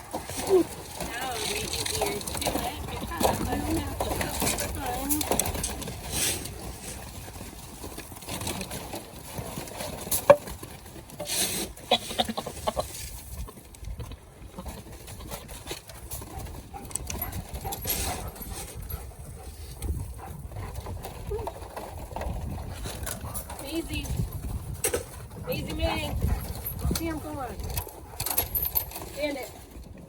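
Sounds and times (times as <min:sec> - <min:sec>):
knocks and clatter: 0:07.4 - 0:11.2.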